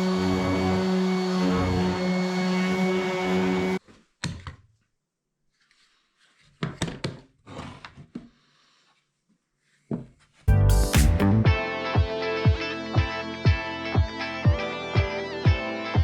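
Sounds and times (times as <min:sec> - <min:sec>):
background music: 0:10.5 - 0:16.0.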